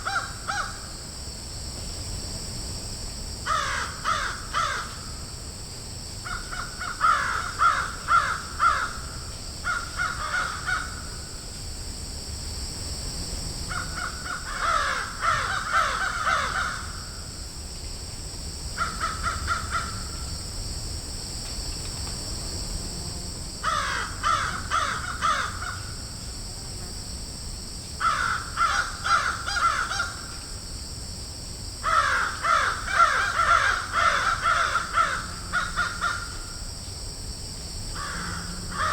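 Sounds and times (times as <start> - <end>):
steady high hiss: 0.0 - 38.9
crows cawing: 0.1 - 0.8, 3.5 - 5.0, 6.2 - 11.0, 13.7 - 17.2, 18.8 - 20.2, 23.6 - 25.9, 28.0 - 30.3, 31.8 - 36.5, 38.0 - 38.9.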